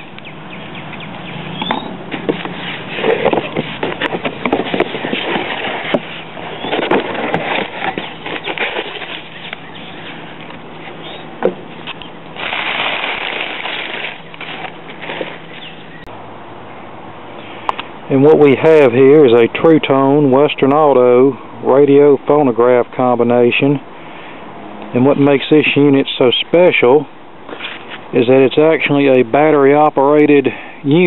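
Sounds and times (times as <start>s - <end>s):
cardboard crackling and rustling: 1.7s - 15.8s.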